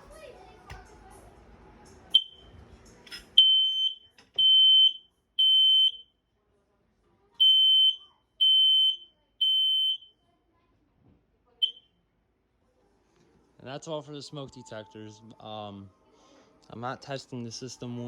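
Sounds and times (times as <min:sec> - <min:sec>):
smoke alarm chirp: 0:02.2 - 0:02.5, 0:03.4 - 0:06.1, 0:07.4 - 0:10.1, 0:11.6 - 0:11.8
smoke alarm high beeps: 0:03.4 - 0:06.0, 0:07.4 - 0:10.1.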